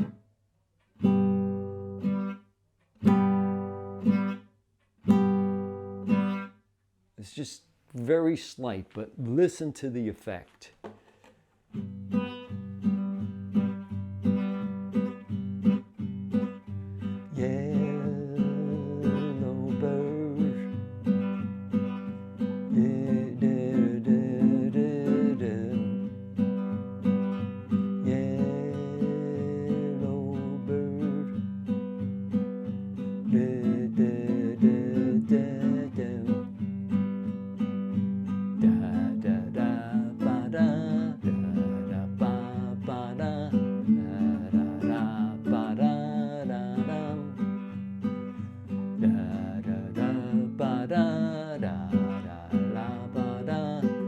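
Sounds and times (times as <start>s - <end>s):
acoustic guitar strumming: 0.0s - 0.2s, 0.9s - 6.6s, 11.7s - 54.0s
man singing: 17.2s - 21.1s, 22.4s - 26.3s, 27.7s - 31.6s, 33.0s - 36.6s, 38.6s - 47.7s, 48.7s - 54.0s.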